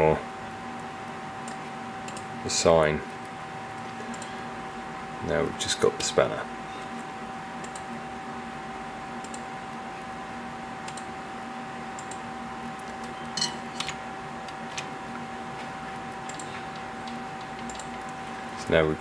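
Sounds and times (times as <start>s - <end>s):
electrical hum with high whine: 0.0s - 19.0s
computer mouse clicks: 1.4s - 2.3s, 3.8s - 4.3s, 7.6s - 7.9s, 9.2s - 9.5s, 10.8s - 11.1s, 12.0s - 12.2s, 16.2s - 18.2s.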